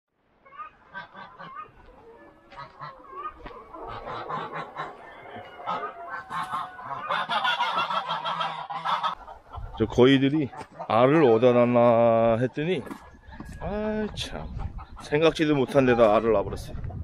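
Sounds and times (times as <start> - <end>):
geese honking: 0.4 - 11.6.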